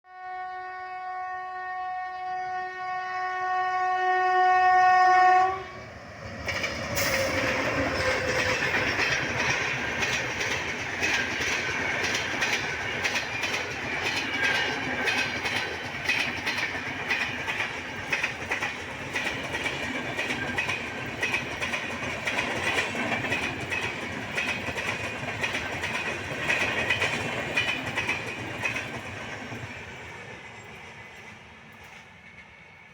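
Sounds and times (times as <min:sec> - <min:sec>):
train horn: 0:00.1 - 0:05.9, 0:07.0 - 0:08.8
train wheels clattering on rails: 0:06.1 - 0:32.9.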